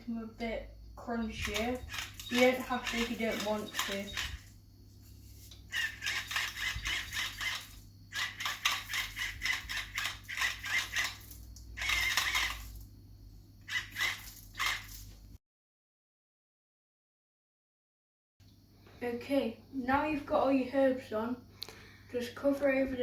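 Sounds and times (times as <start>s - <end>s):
salt grinder clicking: 1.4s - 4.5s, 5.5s - 12.8s.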